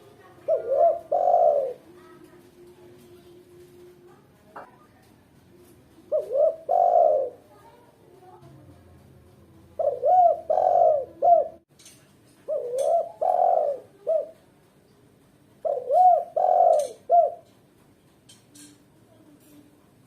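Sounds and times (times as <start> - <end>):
dove cooing: 0.2 - 3.9, 5.9 - 7.5, 9.7 - 11.6, 12.4 - 14.5, 15.6 - 17.6.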